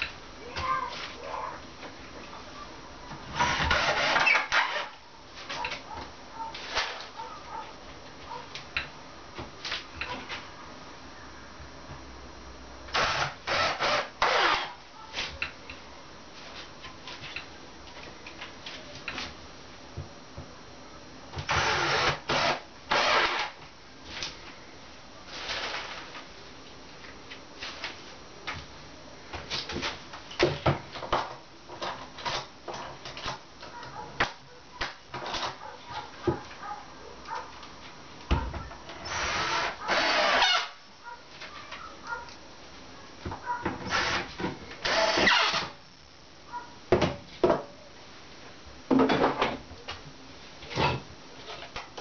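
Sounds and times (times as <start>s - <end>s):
loud noisy tool bursts: 3.4s - 4.9s, 12.9s - 14.8s, 21.5s - 23.6s, 39.0s - 40.8s, 43.9s - 45.7s.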